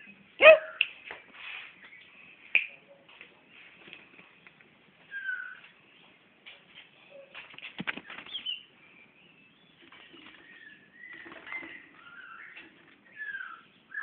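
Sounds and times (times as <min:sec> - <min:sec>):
bird chirps and calls: 0:03.5 - 0:06.2, 0:08.0 - 0:14.0.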